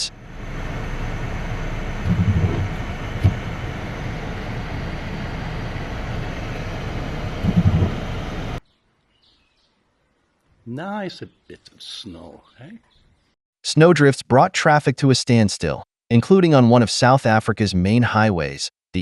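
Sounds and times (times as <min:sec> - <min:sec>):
vehicle and road noise: 0:00.0 - 0:08.6
short low bumps: 0:01.8 - 0:08.6.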